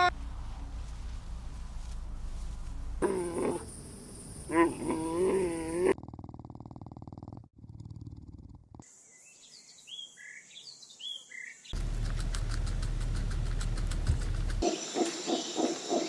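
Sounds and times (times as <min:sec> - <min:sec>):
pitched animal call: 0:03.0 - 0:03.7, 0:04.5 - 0:06.0
rumbling purr: 0:04.4 - 0:08.9.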